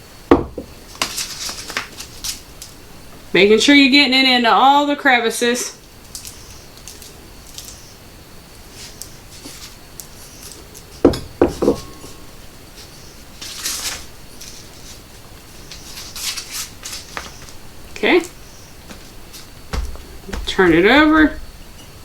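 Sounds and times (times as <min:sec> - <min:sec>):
flour scraping and rustling: 0:00.9 - 0:02.5, 0:12.0 - 0:21.4
bowl and utensil knocks: 0:11.1 - 0:12.1.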